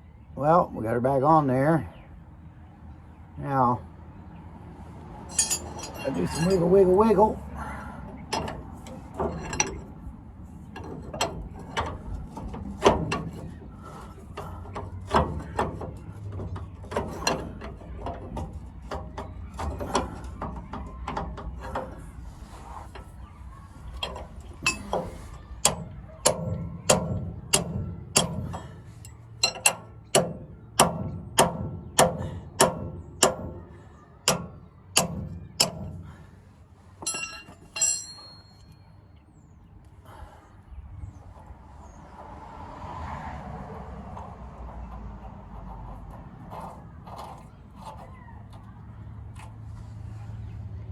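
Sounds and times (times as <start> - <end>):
metal clicks and knocks: 5.3 - 7.3, 8.0 - 22.3, 23.8 - 36.1, 37.0 - 38.8, 44.0 - 49.6.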